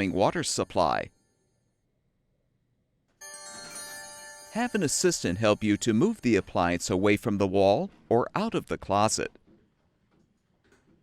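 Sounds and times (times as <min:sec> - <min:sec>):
faint ringing tone: 0:00.0 - 0:02.2.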